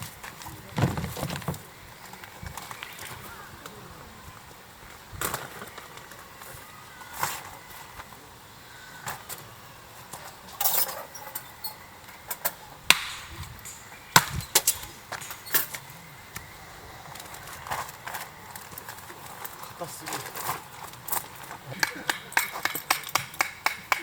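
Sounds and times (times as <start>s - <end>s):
axe splitting firewood: 21.2s - 24.0s.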